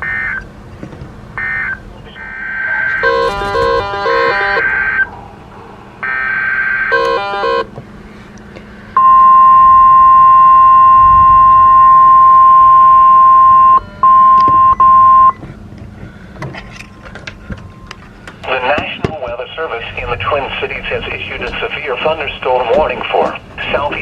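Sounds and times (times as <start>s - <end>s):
screeching digital header bursts: 1.4s - 5.1s
single-pitch warning tone: 1.4s - 5.1s, 6.0s - 7.7s, 9.0s - 15.4s.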